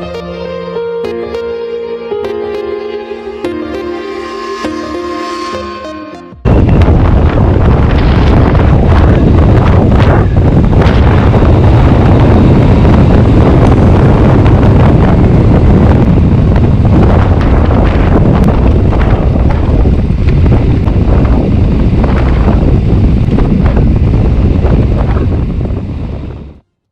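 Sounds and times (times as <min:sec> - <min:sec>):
deep engine rumble: 0:06.4 - 0:26.7
wind buffeting microphone: 0:06.4 - 0:26.7.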